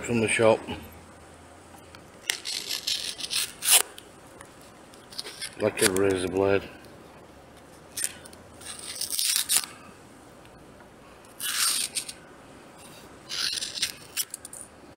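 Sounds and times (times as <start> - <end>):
knife blade slicing: 2.3 - 4.0.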